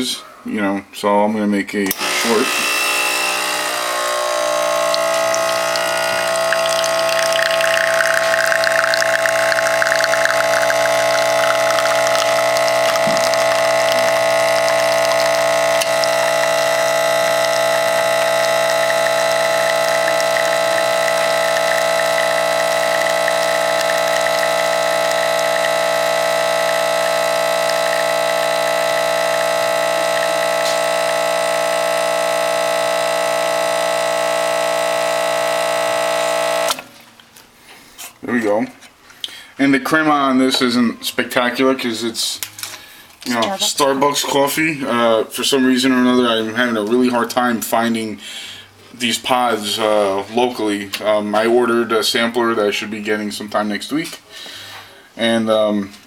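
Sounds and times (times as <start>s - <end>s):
espresso machine pump humming: 1.9s - 36.8s.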